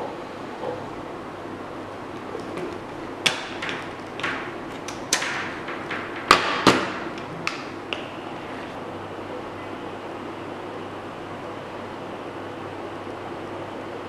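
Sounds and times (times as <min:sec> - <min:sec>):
sharp knocks: 0:02.2 - 0:08.2.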